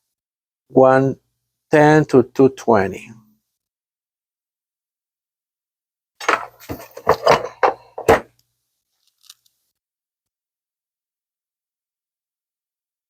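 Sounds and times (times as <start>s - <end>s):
hard objects clicking and knocking: 6.2s - 8.4s.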